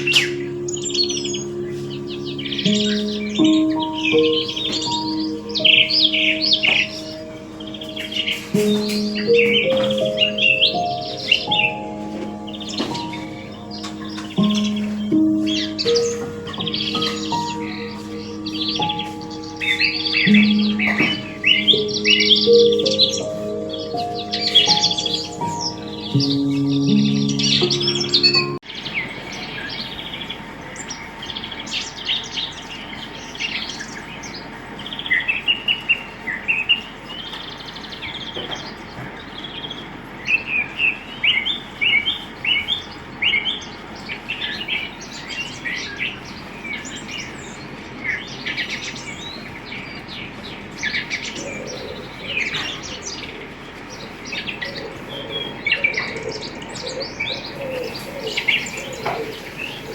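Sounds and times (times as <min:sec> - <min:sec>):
lower repeated bird call: 0:00.0 - 0:30.4, 0:54.0 - 0:59.9
small birds chirping: 0:00.0 - 0:59.9
steady background hiss: 0:00.0 - 0:59.9.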